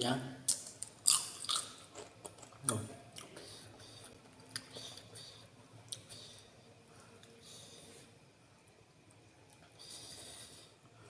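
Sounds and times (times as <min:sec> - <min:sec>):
person chewing with mouth clicks: 0:00.5 - 0:06.2.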